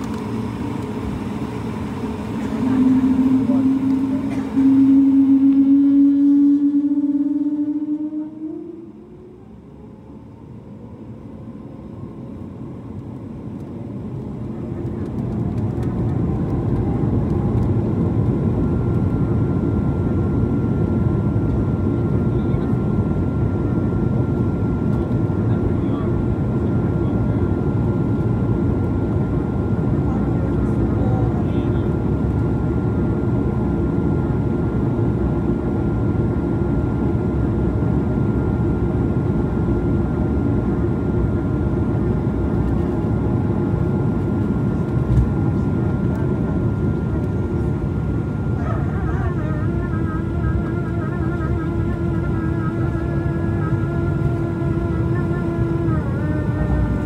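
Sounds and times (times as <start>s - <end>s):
faint high whine: 0.0s - 13.1s
aircraft cabin engine rumble: 0.0s - 57.0s
thin steady whine: 0.0s - 57.0s.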